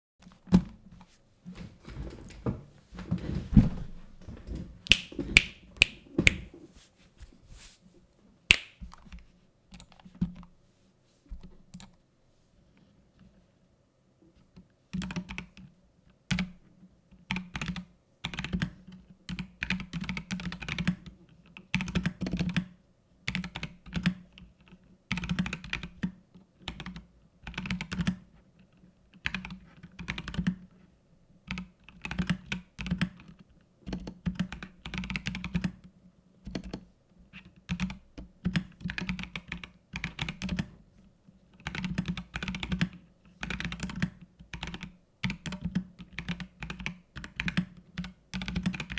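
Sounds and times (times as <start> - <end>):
typing on mechanical keyboard: 29.3 - 30.6, 37.7 - 40.7, 41.6 - 48.9.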